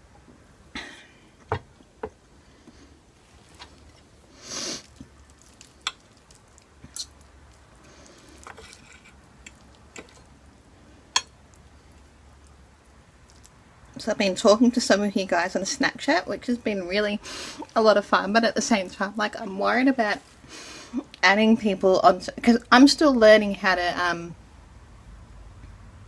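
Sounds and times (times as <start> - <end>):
wet chewing of food: 2.7 - 10.4, 11.2 - 14.0.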